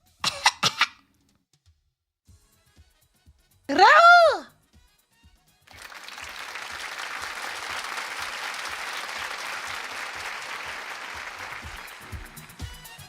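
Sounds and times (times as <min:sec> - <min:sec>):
crowd applause: 0:05.7 - 0:13.0.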